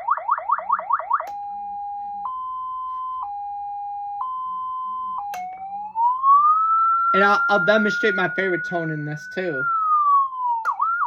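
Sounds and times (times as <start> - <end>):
electronic police siren: 0.0 - 11.0
siren switch click: 1.2 - 1.5, 5.2 - 5.7, 10.6 - 10.9.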